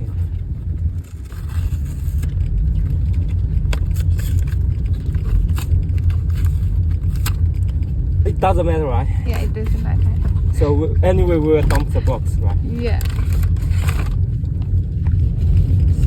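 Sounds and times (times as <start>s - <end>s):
steady low rumble: 0.0s - 16.0s
packaging clicks and scraping: 0.8s - 8.0s, 12.8s - 14.2s.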